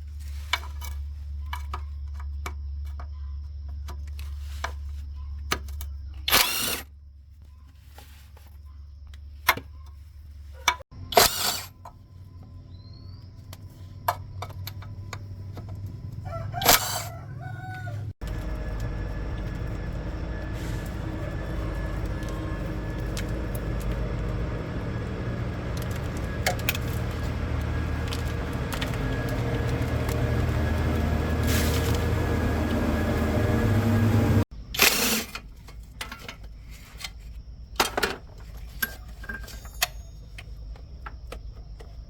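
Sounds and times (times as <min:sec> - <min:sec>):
low mechanical drone: 0:10.7 - 0:34.5
rooster crowing: 0:15.9 - 0:34.4.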